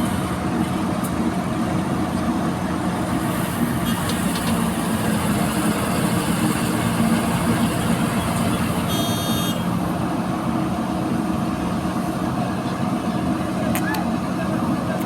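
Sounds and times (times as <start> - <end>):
diesel engine running: 0.0 - 15.0
high whistle-like tone: 8.9 - 9.7.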